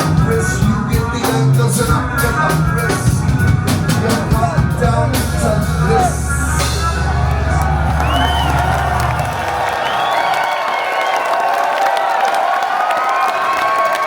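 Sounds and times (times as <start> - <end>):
drums: 0.0 - 11.0
low bass note ringing: 4.7 - 9.6.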